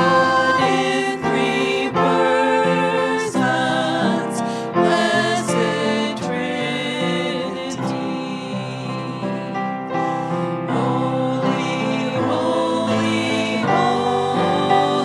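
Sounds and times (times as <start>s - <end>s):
congregation singing: 0.0s - 15.0s.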